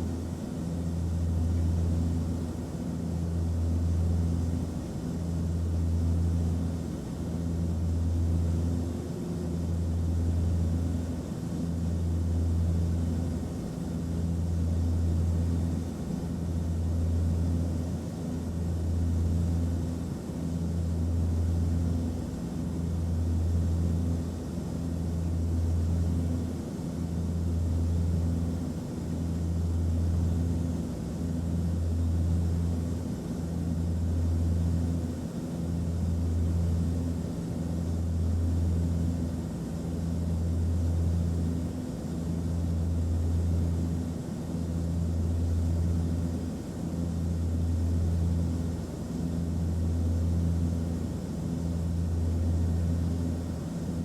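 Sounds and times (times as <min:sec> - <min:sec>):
aircraft cabin low drone: 0:00.0 - 0:54.0.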